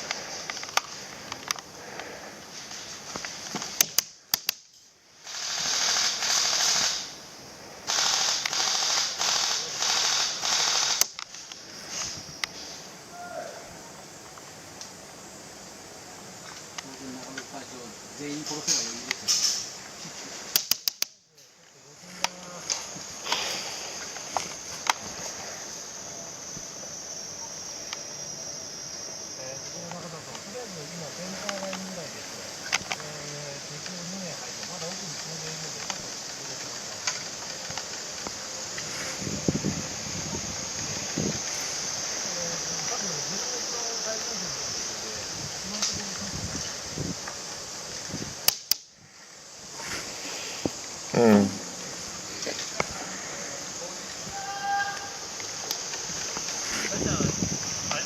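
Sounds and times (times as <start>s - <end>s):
high insect drone: 0.0s - 58.0s
sharp clicks: 3.1s - 7.1s, 7.9s - 11.6s, 20.5s - 21.2s, 48.4s - 48.9s.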